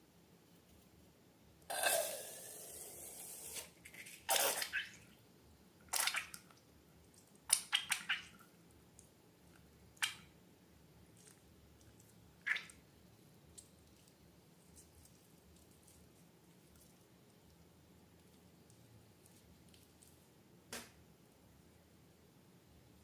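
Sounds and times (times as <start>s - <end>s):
slime squelching and dripping: 3.8s - 5.2s, 5.8s - 10.4s, 11.0s - 20.3s.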